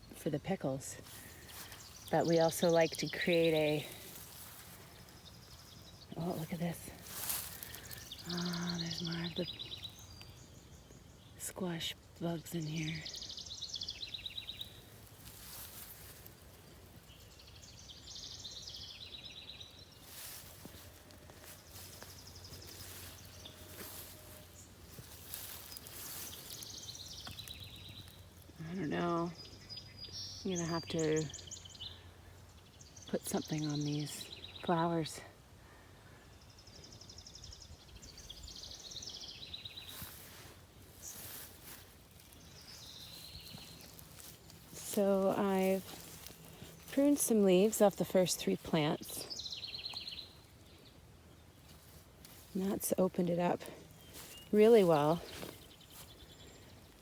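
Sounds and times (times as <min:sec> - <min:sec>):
songbird singing trills: 0:00.0 - 0:57.0
leaves rustling: 0:01.0 - 0:10.3, 0:12.6 - 0:28.6, 0:38.0 - 0:57.0.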